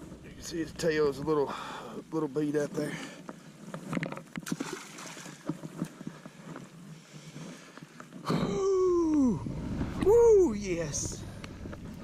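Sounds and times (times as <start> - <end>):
splashing in shallow water: 4.3 - 6.0.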